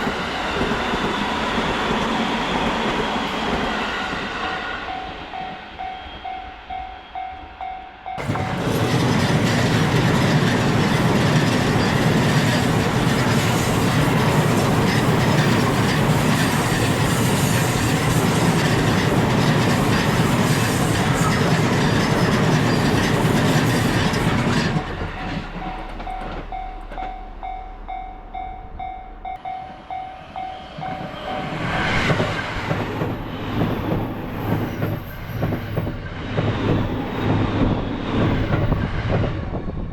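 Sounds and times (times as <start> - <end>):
train passing close by: 0.0 - 39.9
level-crossing warning bell ringing: 25.6 - 31.0.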